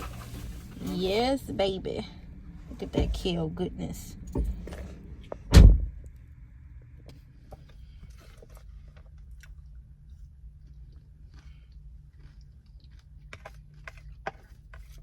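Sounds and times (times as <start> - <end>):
low steady rumble: 0.0 - 15.0
loud thump: 5.5 - 6.0.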